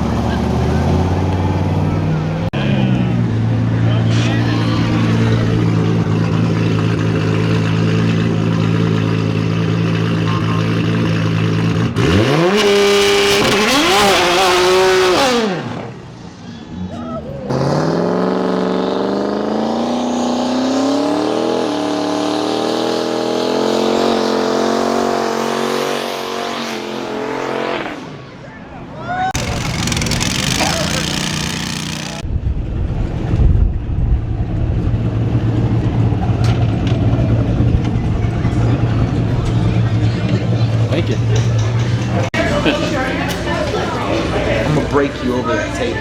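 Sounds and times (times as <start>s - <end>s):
car engine revving: 0.0s - 16.2s, 17.5s - 28.0s, 29.4s - 32.2s.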